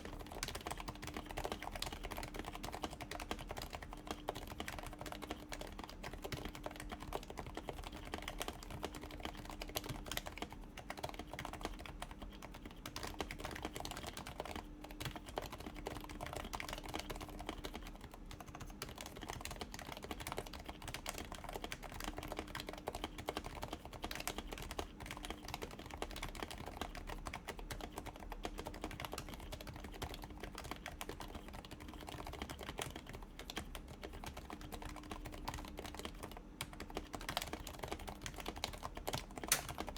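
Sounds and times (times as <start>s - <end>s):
soft keyboard typing: 0.0s - 39.9s.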